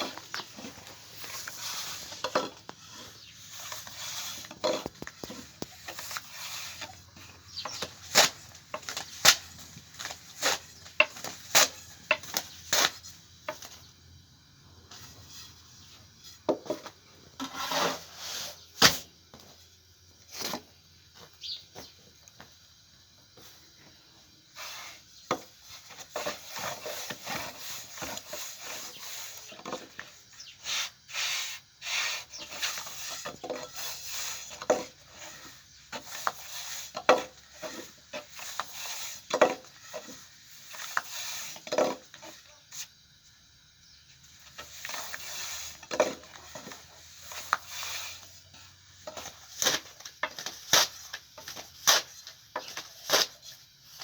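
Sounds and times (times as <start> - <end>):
rubbing and scraping: 0.0 - 13.7, 17.4 - 18.7.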